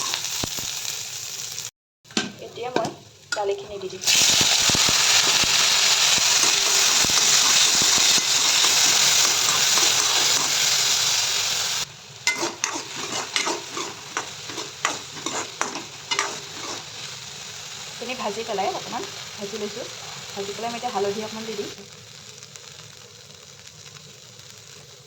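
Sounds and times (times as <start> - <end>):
lentils sizzling in hot oil: 0.0 - 1.7, 2.4 - 25.0
spoon scraping a pan: 5.2 - 11.2, 12.2 - 17.2.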